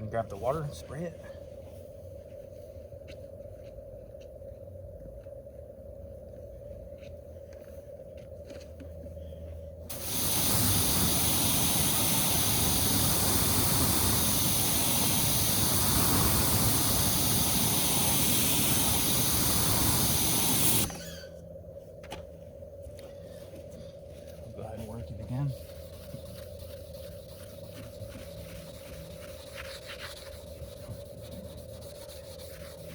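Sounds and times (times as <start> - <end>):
water spraying from a hose: 9.9 - 20.9.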